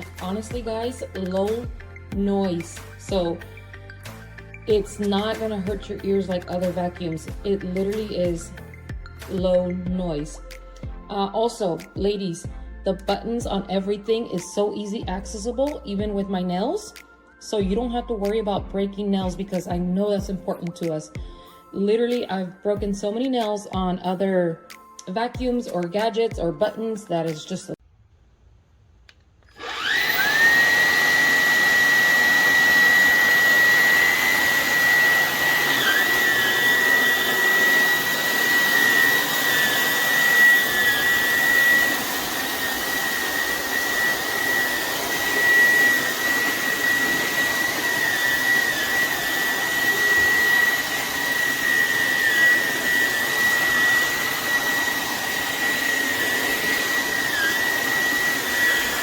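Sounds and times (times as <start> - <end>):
stick vacuum whining: 29.1 - 59.0.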